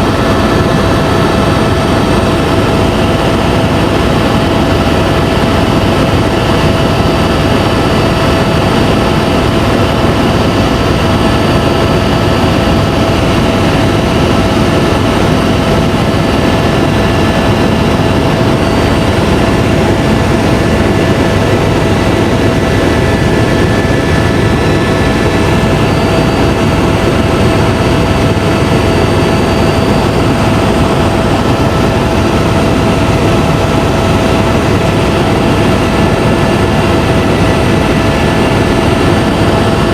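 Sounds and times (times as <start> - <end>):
helicopter cabin drone and whine: 0.0 - 39.9.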